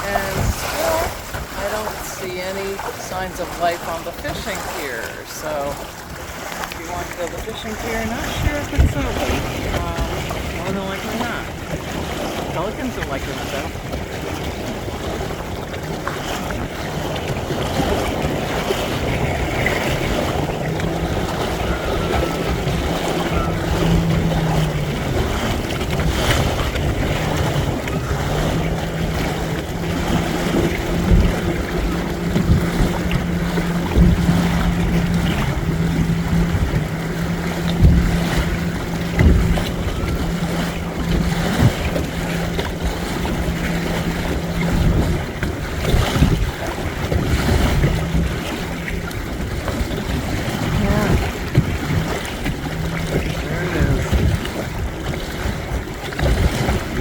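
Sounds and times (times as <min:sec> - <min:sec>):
water rushing past boat: 0:00.0 - 0:57.0
wind buffeting microphone: 0:00.0 - 0:57.0
steady low hum: 0:18.3 - 0:55.1
short thumps: 0:20.8 - 0:46.5.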